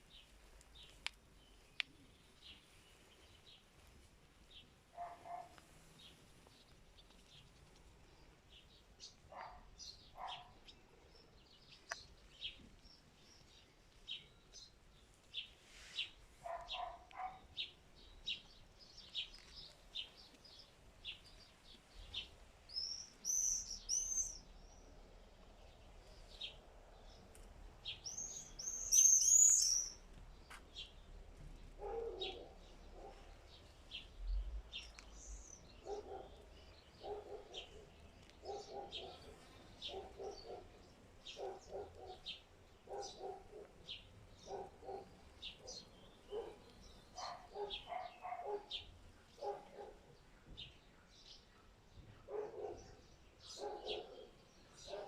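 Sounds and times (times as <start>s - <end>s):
songbirds chirping: 0.0s - 55.0s
low repeated bird call: 28.0s - 30.0s.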